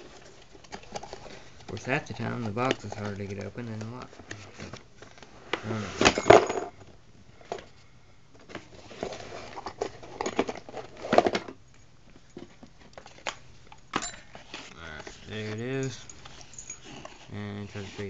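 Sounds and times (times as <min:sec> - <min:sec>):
metal parts and keys clinking: 0:06.0 - 0:06.9, 0:09.8 - 0:17.4.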